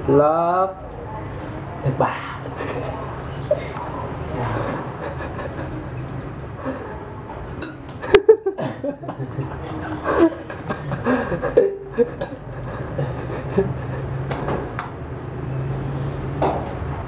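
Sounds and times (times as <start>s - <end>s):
low voices: 0.8s - 7.4s.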